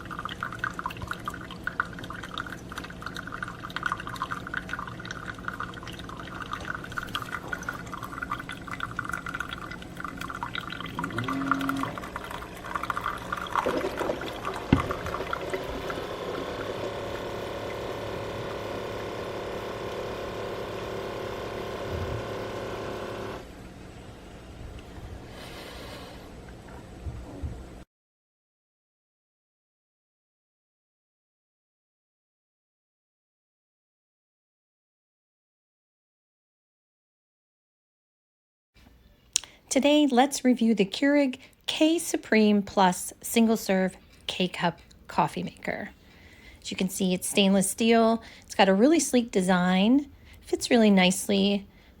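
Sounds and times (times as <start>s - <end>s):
coffee spluttering into cup: 0.0s - 21.9s
coffee machine humming: 0.0s - 27.0s.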